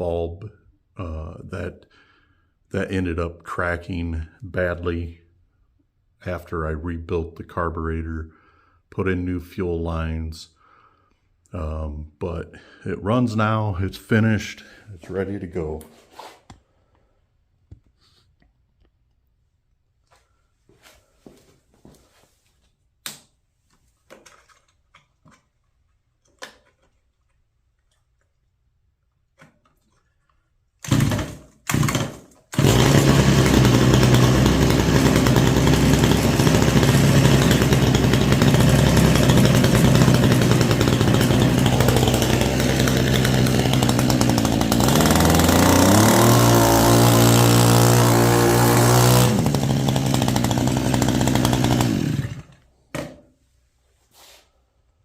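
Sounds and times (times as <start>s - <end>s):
small gasoline engine running: 30.8s - 52.6s.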